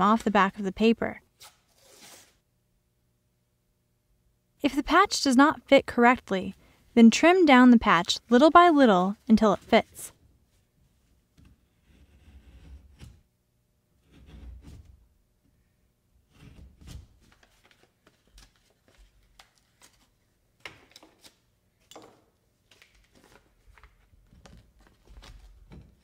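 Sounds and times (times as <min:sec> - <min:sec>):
paper rustling: 0:17.2 - 0:20.2, 0:22.7 - 0:25.7.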